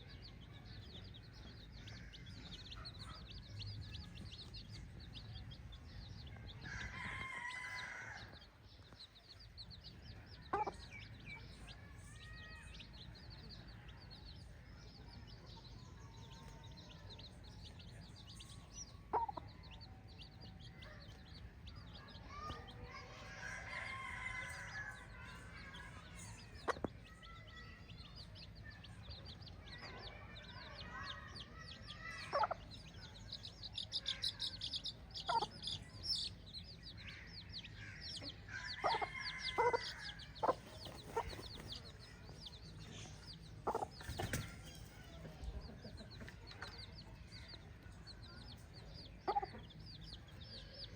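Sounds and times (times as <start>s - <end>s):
roosters crowing: 6.6s - 8.4s, 22.3s - 25.8s, 37.8s - 41.8s
chickens clucking: 9.6s - 13.6s, 15.3s - 29.0s, 29.8s - 47.9s, 48.6s - 50.3s.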